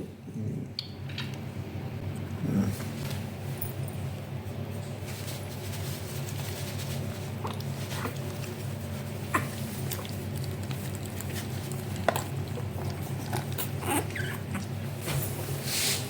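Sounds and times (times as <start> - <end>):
steady low hum: 0.0 - 16.0
puppy squeaking: 13.8 - 14.7.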